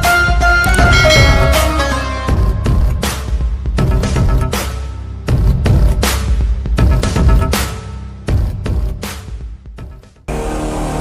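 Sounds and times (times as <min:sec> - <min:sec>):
electronic music with heavy bass: 0:00.7 - 0:04.8.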